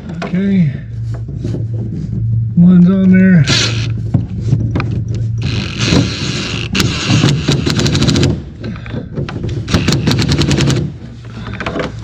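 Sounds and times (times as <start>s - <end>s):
steady low hum: 0.0s - 12.0s
rapid ratcheting clicks: 5.4s - 8.4s, 9.7s - 10.9s.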